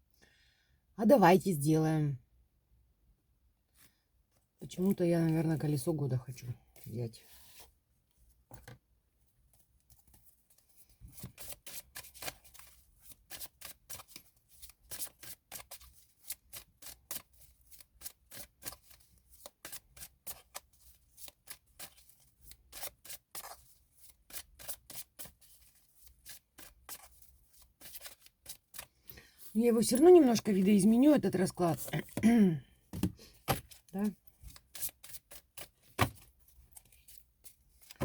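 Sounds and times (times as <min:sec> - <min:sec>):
cards being shuffled: 0:11.1 - 0:28.9, 0:33.0 - 0:38.0.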